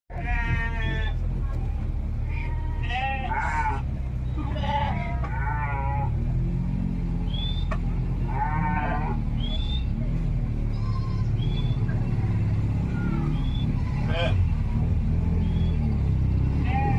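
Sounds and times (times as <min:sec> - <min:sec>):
sheep bleating: 0:00.1 - 0:01.2, 0:02.2 - 0:06.2, 0:08.2 - 0:09.3, 0:10.6 - 0:14.5, 0:16.6 - 0:16.9
low rumble: 0:00.1 - 0:16.9.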